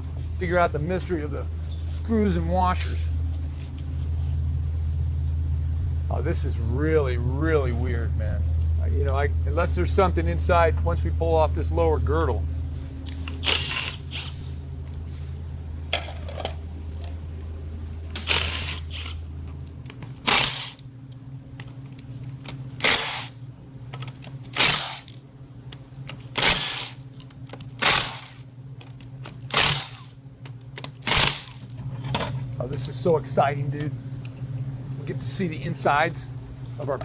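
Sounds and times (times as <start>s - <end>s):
low steady hum: 0.0s - 37.0s.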